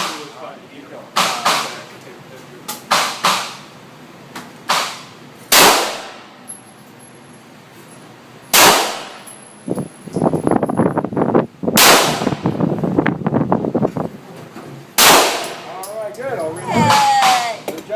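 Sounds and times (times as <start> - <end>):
loud gunshots with echo: 4.8 - 6.3, 8.5 - 9.2, 11.8 - 12.4, 15.0 - 15.7.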